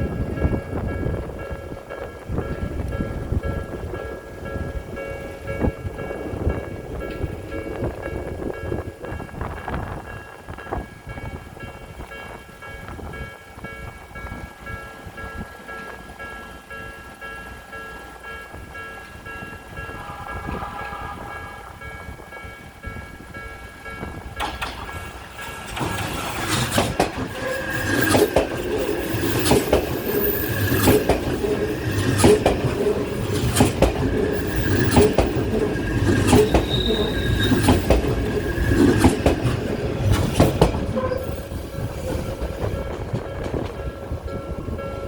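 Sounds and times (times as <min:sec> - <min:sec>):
electric train passing: 0:00.0 - 0:45.0
train wheels clacking on rail joints: 0:11.6 - 0:45.0
level crossing bell ringing: 0:13.8 - 0:25.2.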